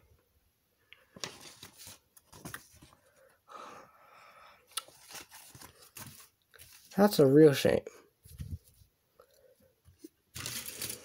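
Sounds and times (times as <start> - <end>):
packaging rustling: 1.2 - 3.0, 4.8 - 7.0, 10.3 - 11.0.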